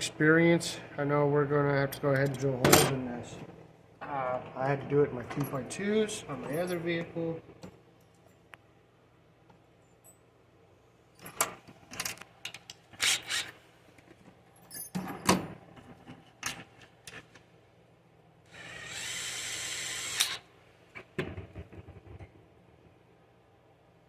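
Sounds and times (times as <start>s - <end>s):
small power drill running: 18.5s - 20.4s.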